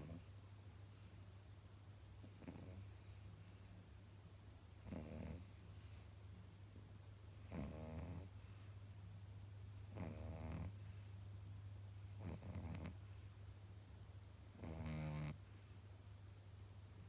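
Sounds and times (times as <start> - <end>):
puppy snoring: 0.0 - 1.4, 2.2 - 4.1, 4.7 - 6.4, 7.3 - 9.0, 9.7 - 11.2, 11.9 - 13.5, 14.3 - 15.8
steady low hum: 0.0 - 17.0.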